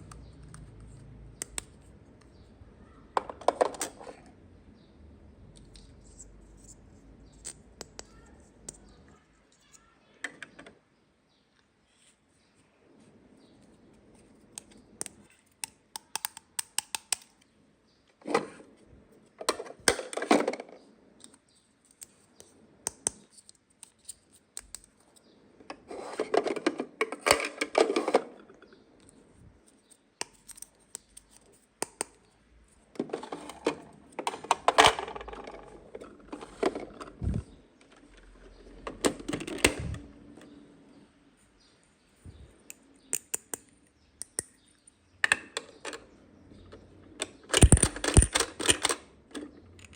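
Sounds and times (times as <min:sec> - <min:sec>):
plastic toy pieces clicking: 0:14.6 - 0:17.4, 0:47.2 - 0:49.9.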